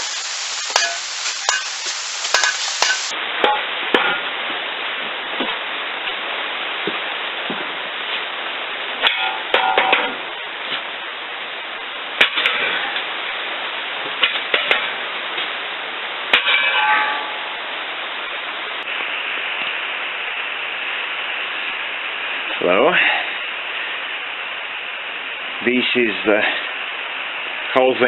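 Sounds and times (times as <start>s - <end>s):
steady hiss: 0.0s - 28.0s
metallic clangs: 0.6s - 4.2s, 9.0s - 10.2s, 16.3s - 17.6s.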